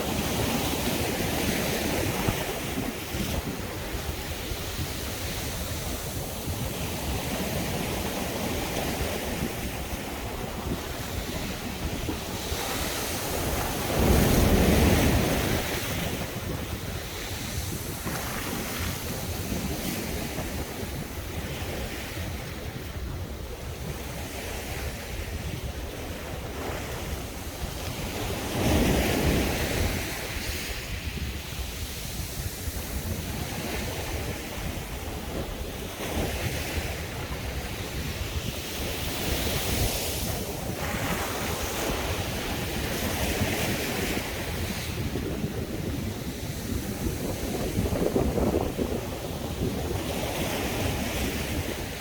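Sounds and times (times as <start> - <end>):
sea waves breaking on beach: 0.0 - 52.0
wind rumbling on microphone: 0.0 - 52.0.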